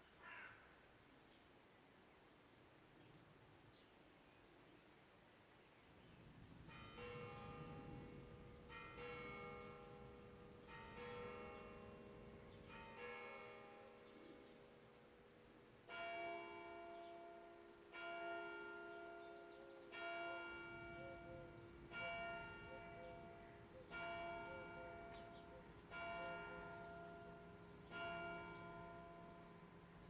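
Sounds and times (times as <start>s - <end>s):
church bell tolling: 6.6s - 30.0s.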